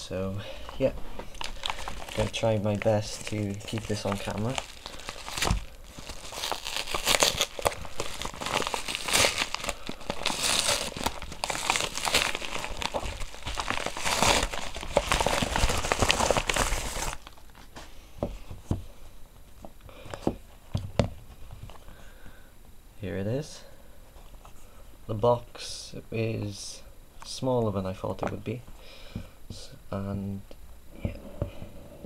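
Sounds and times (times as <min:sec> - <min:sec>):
packaging crinkling and tearing: 0:00.6 - 0:17.7.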